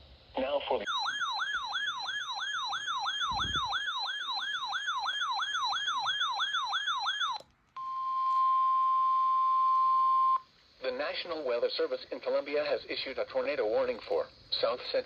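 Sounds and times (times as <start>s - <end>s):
rapid falling siren sweep: 0.9s - 7.4s.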